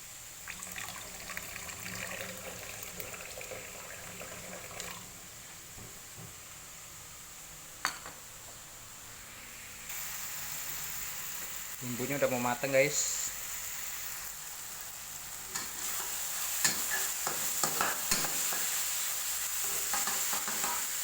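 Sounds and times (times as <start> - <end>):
water pouring into coconut milk: 0.4 - 5.0.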